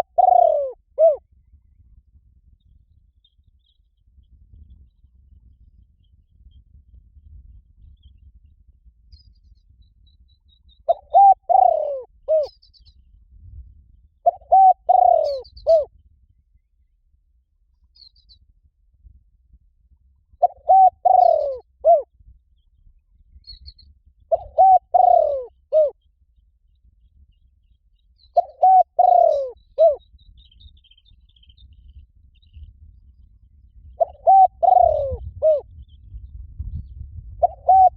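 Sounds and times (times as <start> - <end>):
dove cooing: 0.0 - 1.2, 10.9 - 12.5, 14.2 - 15.9, 20.4 - 22.1, 24.3 - 26.0, 28.4 - 30.0, 34.0 - 35.7, 37.4 - 37.9
small birds chirping: 0.0 - 1.2, 7.8 - 13.2, 14.3 - 15.9, 17.8 - 18.5, 20.4 - 37.9.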